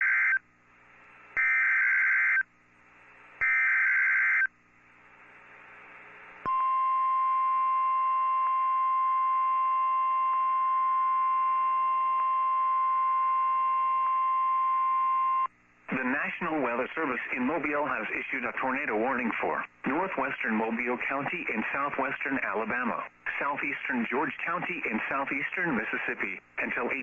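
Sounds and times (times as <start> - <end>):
faint radio hiss: 0.5 - 1.4, 4.6 - 6.5, 15.5 - 27.0
steady warning alarm tone: 3.4 - 4.5.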